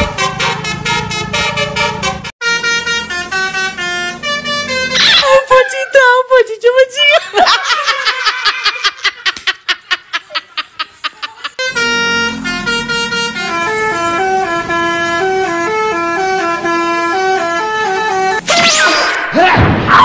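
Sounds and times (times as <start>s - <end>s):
multi-tone bus horn melody: 0.0s - 5.8s, 11.6s - 18.5s.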